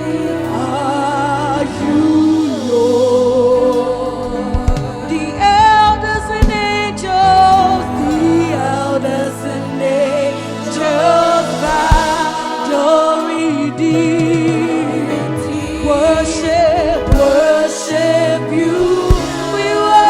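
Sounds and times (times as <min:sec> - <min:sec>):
keyboard and bass chords: 0:00.0 - 0:20.0
low thumps: 0:04.3 - 0:07.6.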